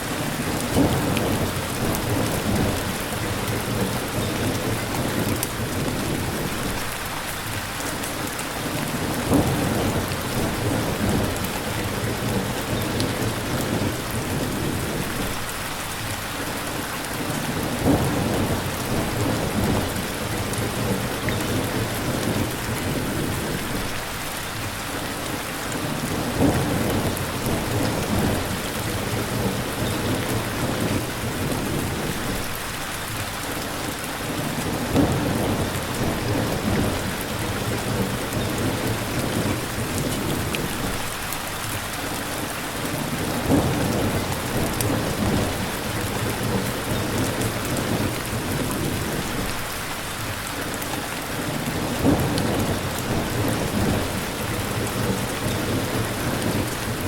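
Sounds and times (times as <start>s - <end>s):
steady rain falling: 0.0s - 57.0s
thunder rumbling: 0.5s - 6.9s, 26.1s - 32.6s, 34.5s - 41.2s, 43.1s - 49.6s, 51.6s - 57.0s.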